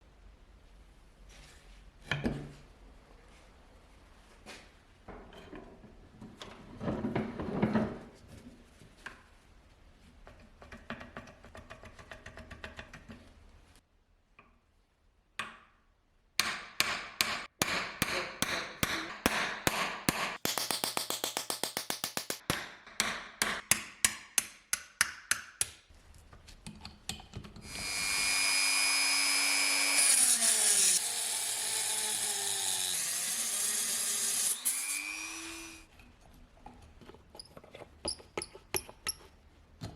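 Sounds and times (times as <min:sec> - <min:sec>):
power tool running: 0:27.7 - 0:35.8
hand tool knocks and scrapes: 0:36.6 - 0:39.9.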